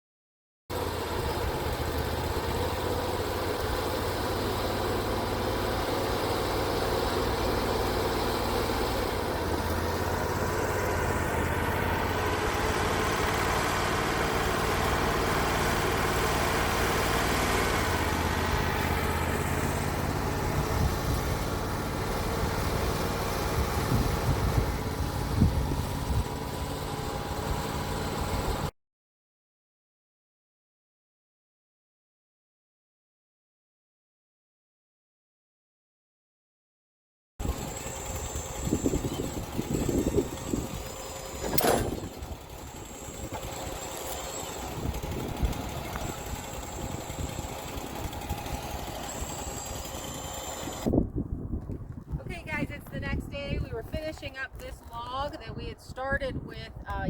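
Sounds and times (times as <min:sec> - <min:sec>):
sawmill engine humming: 0:00.7 - 0:28.7, 0:37.4 - 0:51.2, 0:52.2 - 0:57.0
sharp knocks and rattles: 0:37.8 - 0:50.9.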